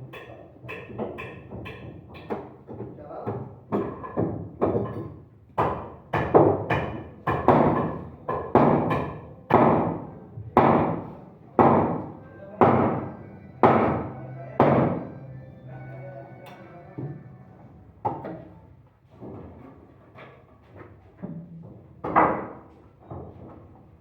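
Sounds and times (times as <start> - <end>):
sharp ringing knocks: 11.6 - 15.2.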